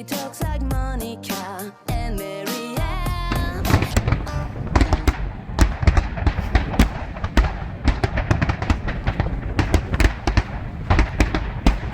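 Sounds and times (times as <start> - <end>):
fireworks bangs and crackles: 2.9 - 11.9
low rumble: 3.0 - 11.9.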